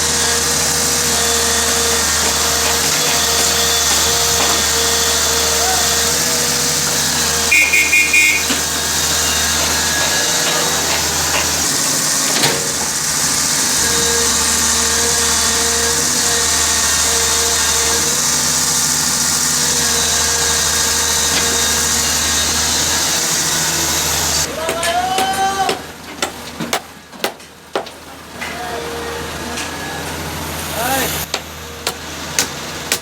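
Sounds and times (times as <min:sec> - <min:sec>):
diesel engine running: 0:00.0 - 0:24.5
high beeps: 0:07.5 - 0:08.6.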